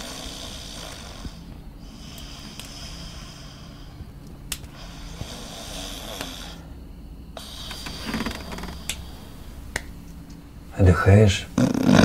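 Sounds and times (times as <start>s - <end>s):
person snoring: 0.0s - 4.0s, 4.7s - 6.7s.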